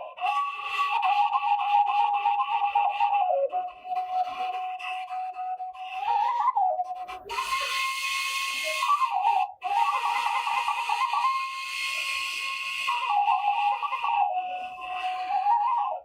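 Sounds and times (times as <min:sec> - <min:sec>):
breathy bamboo flute melody: 0:00.0 - 0:16.0.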